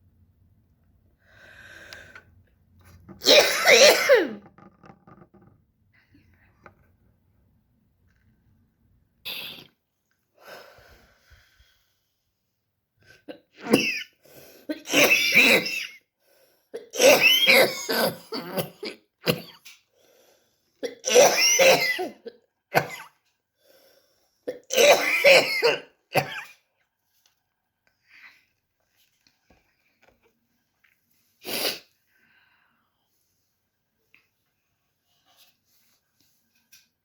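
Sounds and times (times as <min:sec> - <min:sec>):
woman coughing: 0:03.2 - 0:04.4, 0:16.8 - 0:19.6, 0:20.9 - 0:23.2, 0:24.5 - 0:26.5.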